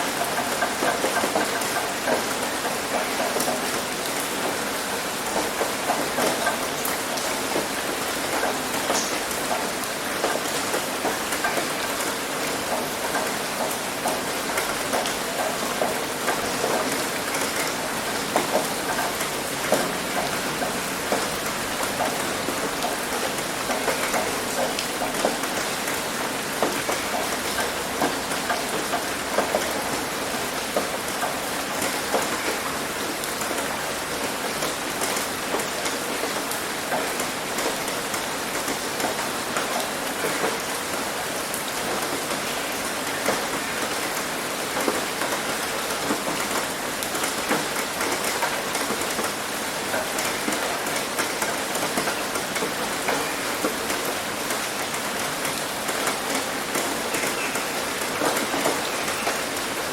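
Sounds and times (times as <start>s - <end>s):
heavy rain drumming on a roof: 0.0s - 59.9s
rain splashing onto concrete: 0.0s - 59.9s.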